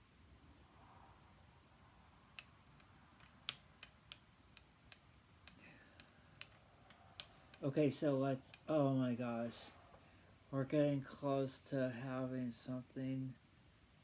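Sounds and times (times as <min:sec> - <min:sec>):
light clicks and taps of tools: 0:02.3 - 0:07.8, 0:08.4 - 0:08.8, 0:09.9 - 0:10.5.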